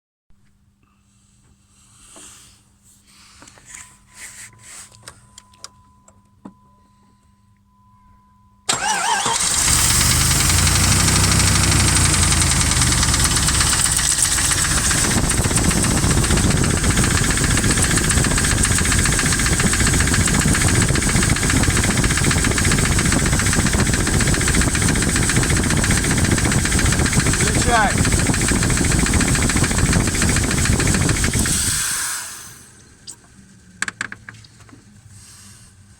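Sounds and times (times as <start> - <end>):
engine starting and idling with knock: 8.7 - 34.9.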